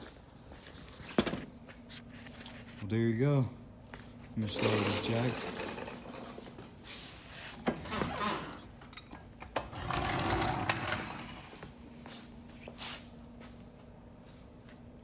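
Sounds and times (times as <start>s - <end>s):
floor jack metal clinks and rattles: 4.4s - 6.7s.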